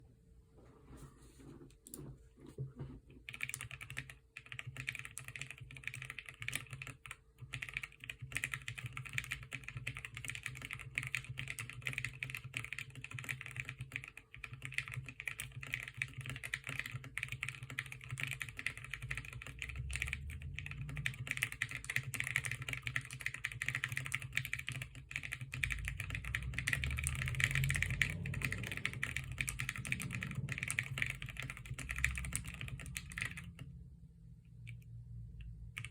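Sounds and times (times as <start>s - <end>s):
mechanical keyboard typing: 3.2s - 33.9s, 34.6s - 35.9s.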